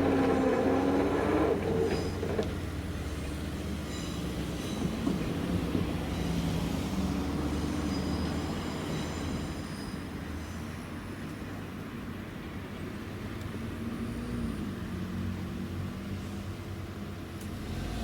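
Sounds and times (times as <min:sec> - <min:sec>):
train wheel squeals: 0:00.0 - 0:11.1
train rail rumble: 0:00.0 - 0:12.8.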